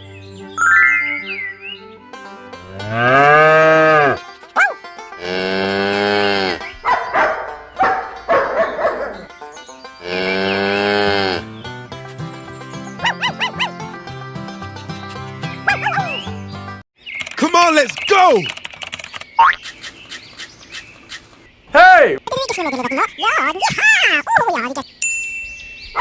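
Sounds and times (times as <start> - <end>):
cattle mooing: 2.6 - 4.2, 5.2 - 6.7, 10.0 - 11.6.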